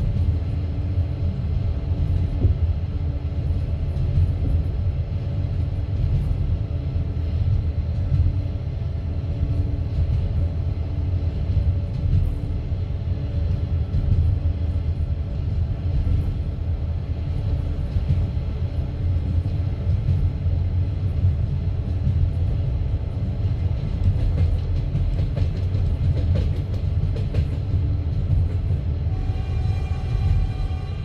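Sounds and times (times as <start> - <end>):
train wheels rumbling on track: 0.0 - 31.0.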